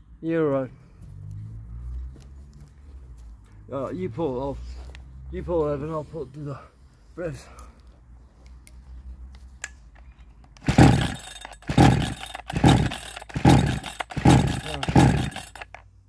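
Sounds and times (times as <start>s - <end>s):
engine cranking whir: 10.4s - 15.9s
chainsaw recoil starter pulls: 10.5s - 15.9s.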